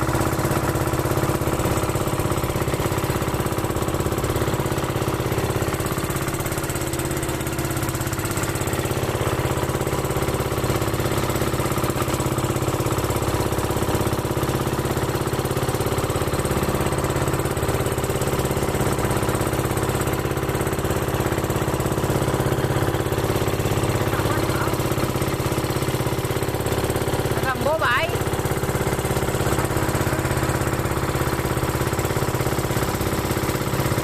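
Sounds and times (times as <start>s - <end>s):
boat engine chugging: 0.0s - 34.0s.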